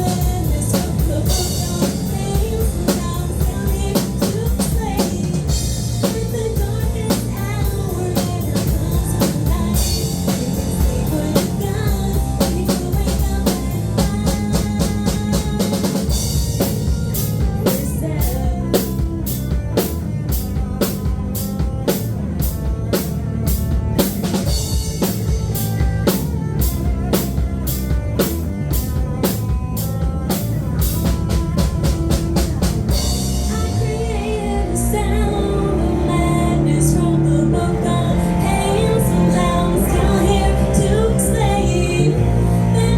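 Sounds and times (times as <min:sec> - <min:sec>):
band playing live: 0:00.0 - 0:42.9
steady bass line: 0:00.0 - 0:42.9.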